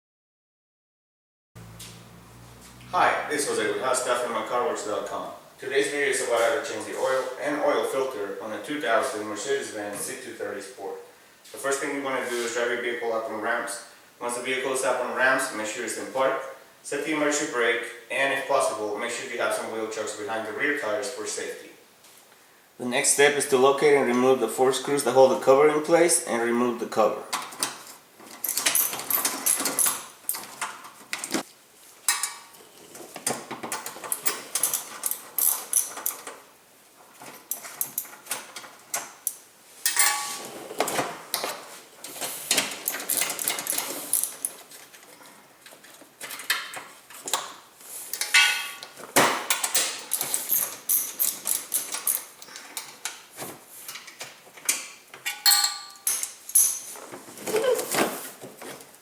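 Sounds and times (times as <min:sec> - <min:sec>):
hand tools clinking on metal screws: 0:27.3 - 0:31.4, 0:33.6 - 0:36.4, 0:37.2 - 0:40.5, 0:42.5 - 0:47.5, 0:48.1 - 0:53.2, 0:53.9 - 0:57.0.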